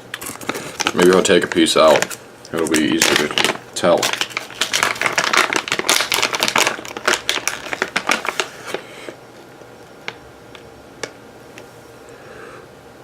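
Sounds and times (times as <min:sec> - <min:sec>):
plastic packaging crinkling: 0:00.0 - 0:09.2.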